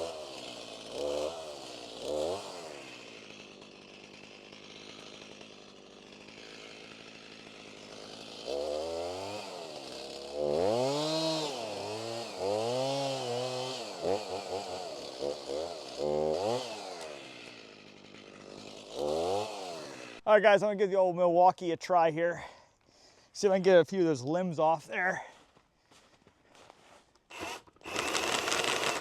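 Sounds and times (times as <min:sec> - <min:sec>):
chainsaw revving: 0:00.0 - 0:20.3, 0:27.3 - 0:29.0.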